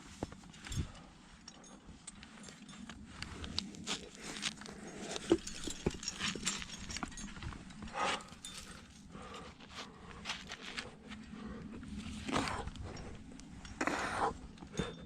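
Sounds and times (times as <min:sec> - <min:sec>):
climber breathing: 0:00.0 - 0:15.0
gear scraping against rock: 0:03.3 - 0:11.0.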